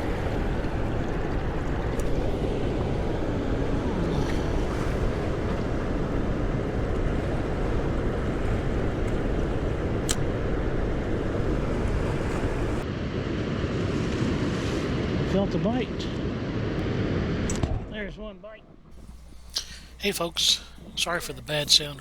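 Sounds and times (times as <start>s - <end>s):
muffled river rushing: 0.0s - 12.9s, 18.9s - 22.0s.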